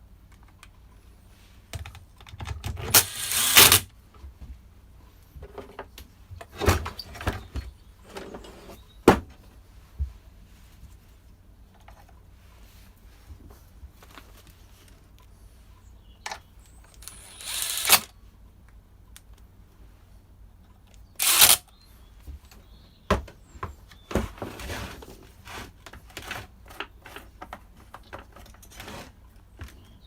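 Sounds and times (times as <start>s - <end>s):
short noisy bursts: 2.9s - 3.9s, 17.0s - 18.1s, 21.2s - 21.6s.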